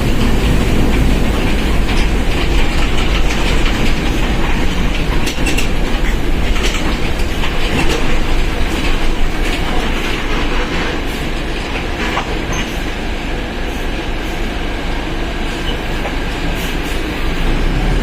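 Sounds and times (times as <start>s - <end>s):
rattles and clicks: 0.0s - 13.0s
deep diesel bus rumble: 0.0s - 18.0s
road noise: 0.0s - 18.0s.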